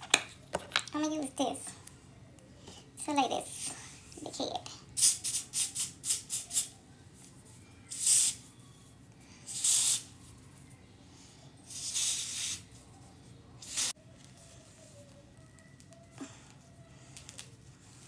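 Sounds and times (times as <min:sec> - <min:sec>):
spray bottle hissing: 0:07.9 - 0:08.4, 0:09.5 - 0:10.1, 0:11.7 - 0:12.7, 0:13.6 - 0:14.0.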